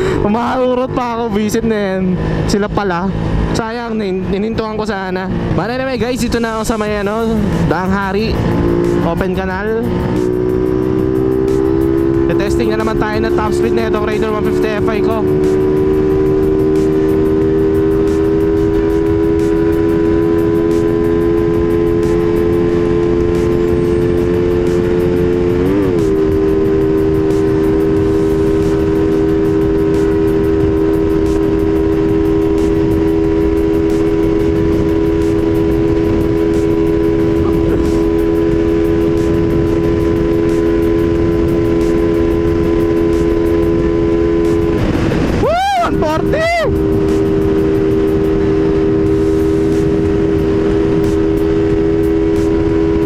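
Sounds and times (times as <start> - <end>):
motorcycle engine at high revs: 0.0 - 53.0
wind rushing: 24.1 - 53.0.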